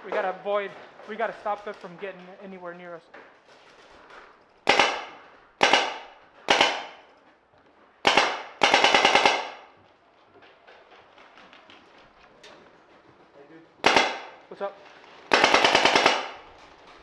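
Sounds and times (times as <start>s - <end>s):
paintball marker firing: 4.7s - 7.1s, 8.0s - 9.7s, 13.8s - 14.5s, 15.3s - 16.6s.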